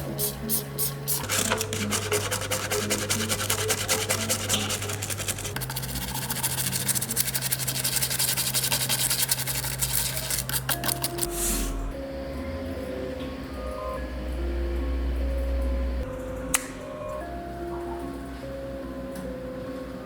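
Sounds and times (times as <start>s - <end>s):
background music: 0.0s - 20.0s.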